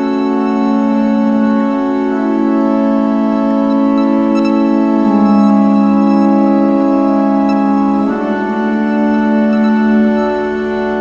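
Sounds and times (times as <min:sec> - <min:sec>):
slow sustained chords: 0:00.0 - 0:11.0.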